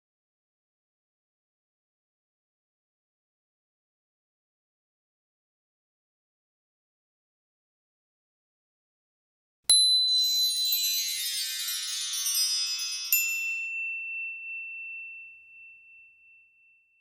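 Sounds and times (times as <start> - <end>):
shimmering chime flourish: 9.9 - 15.4.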